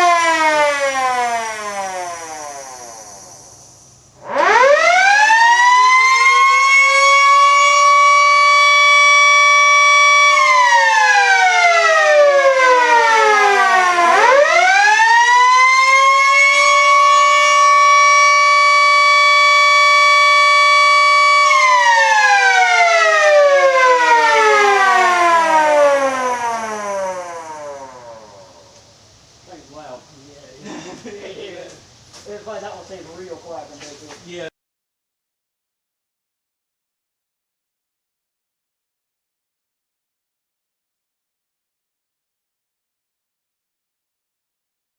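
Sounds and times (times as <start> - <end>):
outdoor warning siren wailing: 0.0 - 29.0.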